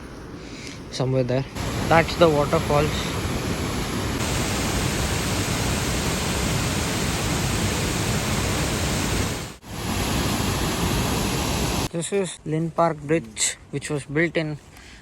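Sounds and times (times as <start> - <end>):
waterfall roaring: 1.6 - 11.9.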